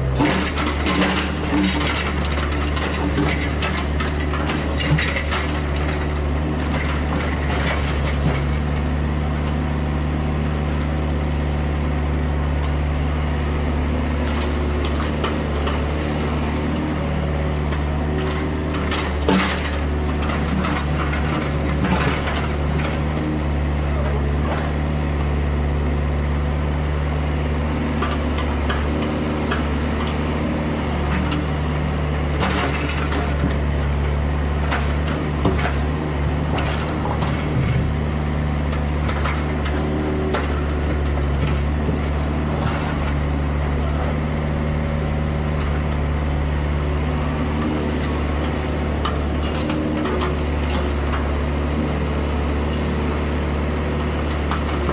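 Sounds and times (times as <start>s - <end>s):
excavator diesel engine: 0.0s - 54.9s.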